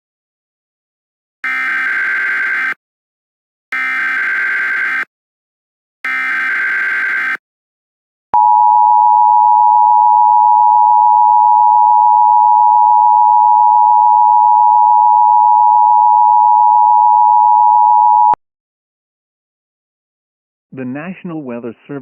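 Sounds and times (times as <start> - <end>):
buzzing data screech: 1.4 - 2.8, 3.8 - 5.1, 6.1 - 7.4.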